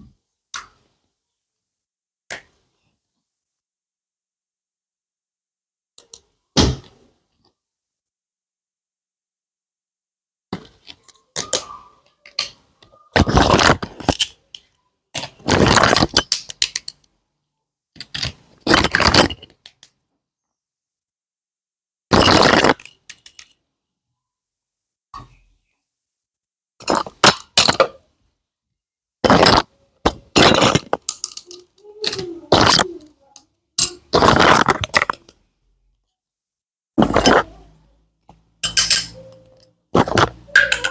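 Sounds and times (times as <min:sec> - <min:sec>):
plastic toy pieces clicking: 0:13.2 - 0:17.1, 0:29.3 - 0:33.1, 0:38.7 - 0:40.9.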